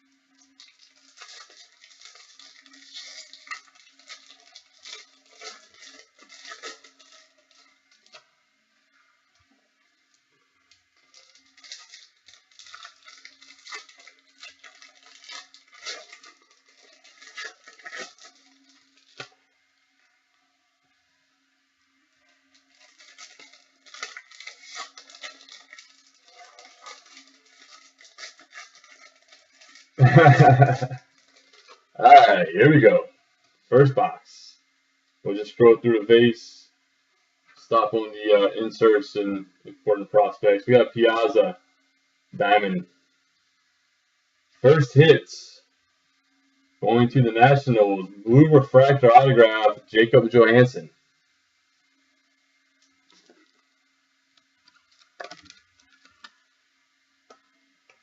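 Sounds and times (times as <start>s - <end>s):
wrappers crinkling and tearing: 0.0s - 8.3s, 10.0s - 19.5s, 22.2s - 34.0s, 52.2s - 58.0s.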